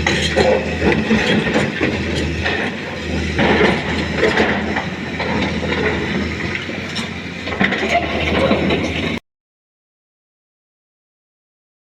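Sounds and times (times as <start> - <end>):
excavator diesel engine humming: 0.0 - 9.2
metallic clanking and grinding: 0.0 - 9.2.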